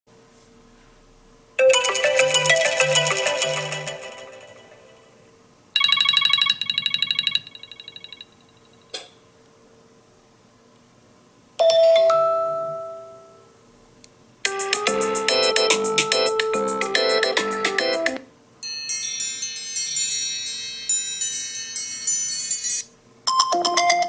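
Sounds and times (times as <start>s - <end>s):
chiming ringtone melody: 1.6s - 5.1s, 11.6s - 13.5s, 14.5s - 24.0s.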